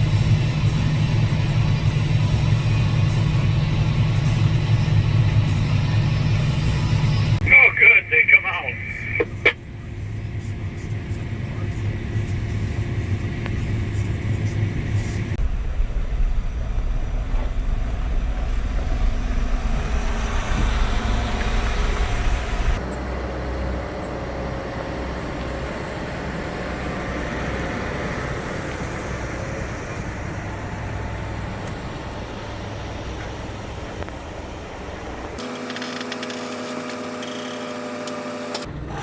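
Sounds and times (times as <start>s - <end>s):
farm vehicle engine running: 10.7s - 22.8s.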